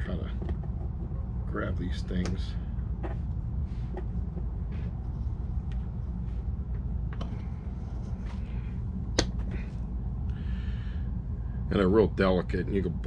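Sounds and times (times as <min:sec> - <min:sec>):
steady low rumble: 0:00.0 - 0:13.0.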